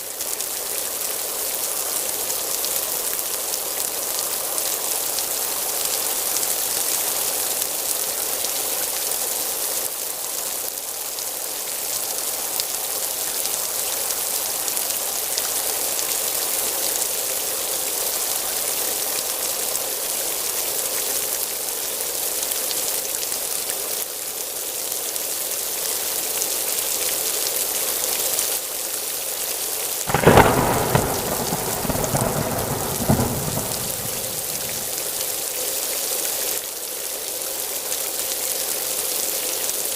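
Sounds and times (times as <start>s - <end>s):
thunderclap rumbling: 30.1s - 35.2s
heavy rain hissing: 30.1s - 35.4s.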